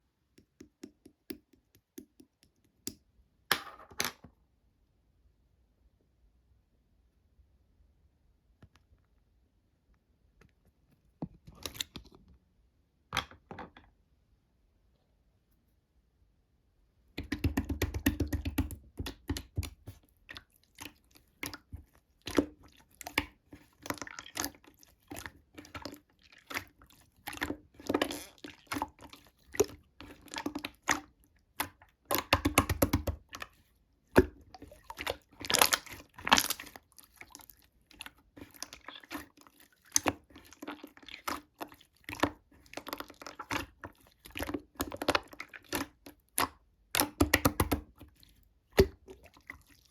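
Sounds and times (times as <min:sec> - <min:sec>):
slime squishing with wet clicks: 0:17.2 - 0:49.9.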